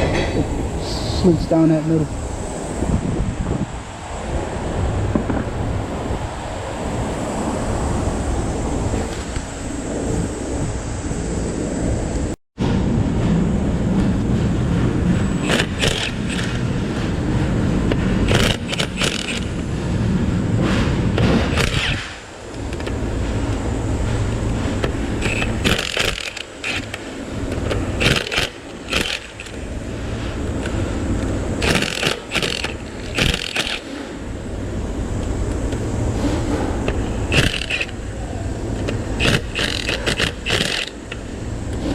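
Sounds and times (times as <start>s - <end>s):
metal tools clinking and scraping: 0.0s - 1.1s
steady low rumble: 0.0s - 41.9s.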